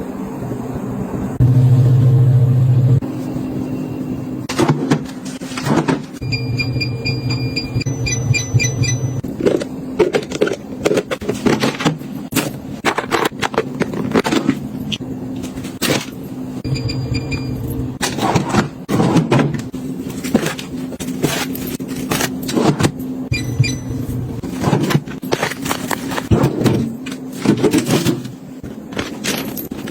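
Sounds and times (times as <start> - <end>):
steady low hum: 0.0 - 29.9
household items clicking and knocking: 9.2 - 16.2, 24.4 - 29.9.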